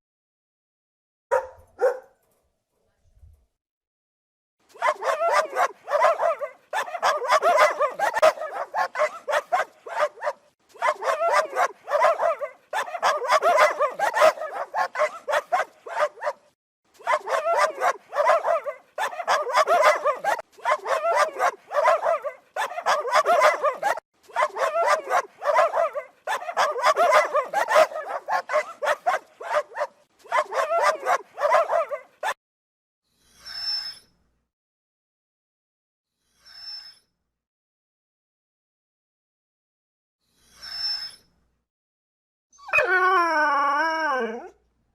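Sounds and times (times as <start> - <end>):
dog barking: 1.3 - 2.2, 4.7 - 32.4.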